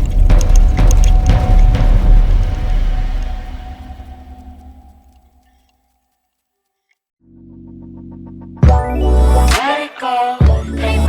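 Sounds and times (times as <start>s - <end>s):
background music: 0.0s - 5.3s, 7.2s - 11.0s
deep low rumble: 0.0s - 5.4s.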